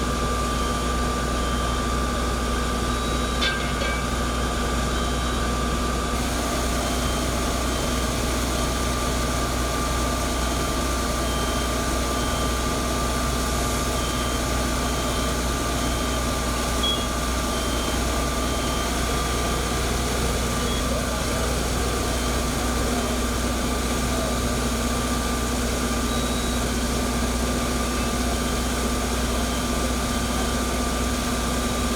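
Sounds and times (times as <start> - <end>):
fire truck engine idling: 6.2 - 31.9
short high beeps: 16.8 - 17.8.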